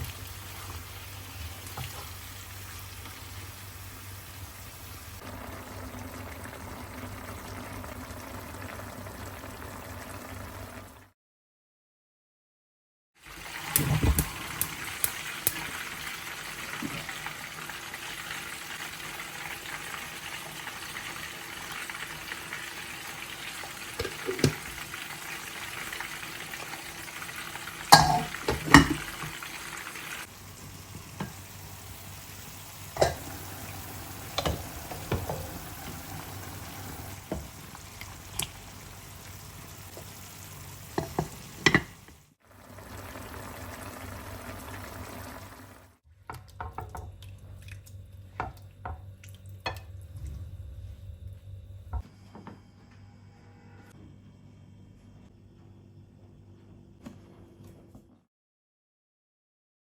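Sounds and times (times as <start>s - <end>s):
food sizzling in a pan: 0.0s - 11.0s, 13.2s - 45.9s.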